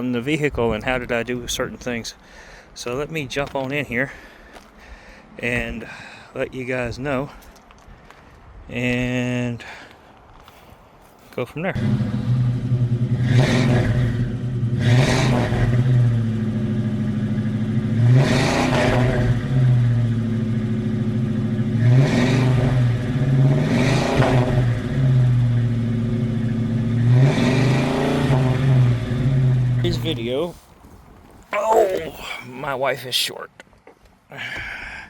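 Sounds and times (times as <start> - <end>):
car engine revving: 11.8 - 30.1.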